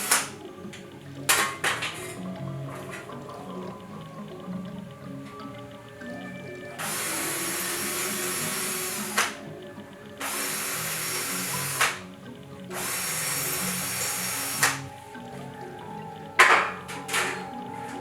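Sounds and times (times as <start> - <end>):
power drill bursts: 0.0 - 0.4, 6.8 - 9.5, 10.2 - 12.1, 12.7 - 15.2.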